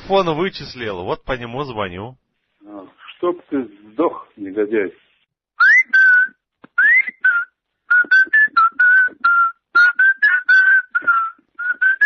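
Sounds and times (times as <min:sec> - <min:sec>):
person whistling short notes: 0:05.6 - 0:12.0.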